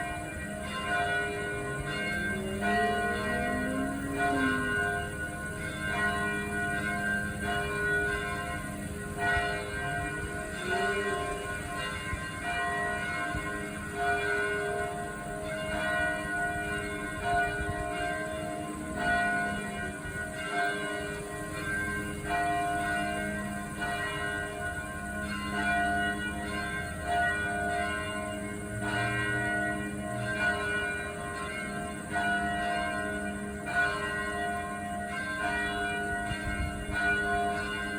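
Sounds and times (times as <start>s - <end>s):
church bells ringing: 0.0s - 37.9s.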